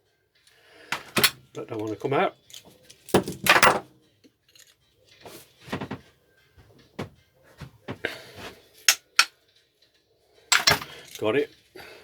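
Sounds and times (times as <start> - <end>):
metal tool clinks and knocks: 0.9 - 3.9, 4.5 - 4.9, 10.5 - 11.4.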